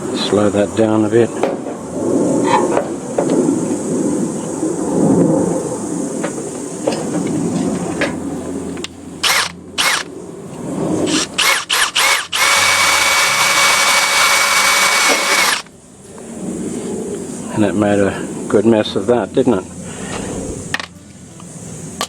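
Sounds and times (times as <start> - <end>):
power drill drilling: 9.2 - 10.1, 11.1 - 15.7.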